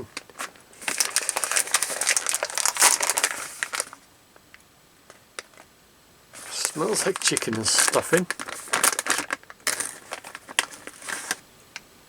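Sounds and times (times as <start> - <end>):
plastic snack packet crinkling: 0.0 - 4.0, 6.4 - 11.4.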